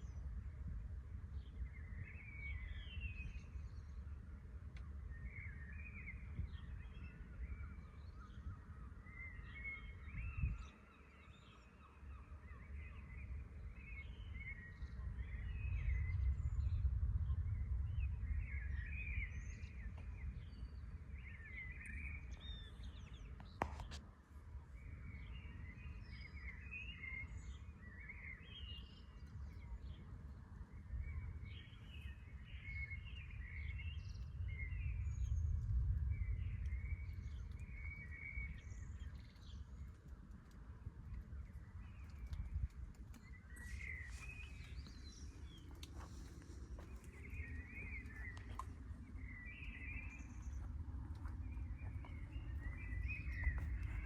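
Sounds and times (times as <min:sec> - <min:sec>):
low rumble: 0:13.4 - 0:23.2, 0:32.8 - 0:54.0
small birds chirping: 0:24.7 - 0:54.0.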